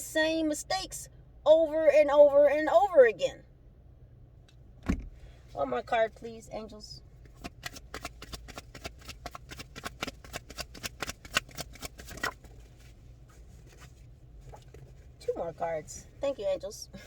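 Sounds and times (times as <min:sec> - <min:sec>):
cards being shuffled: 0:07.2 - 0:15.0.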